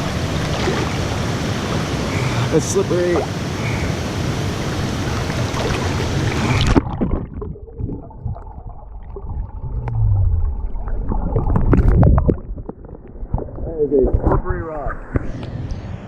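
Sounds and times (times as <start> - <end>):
waterfall rushing: 0.0 - 6.8
muffled low gurgling rumble: 5.0 - 16.0.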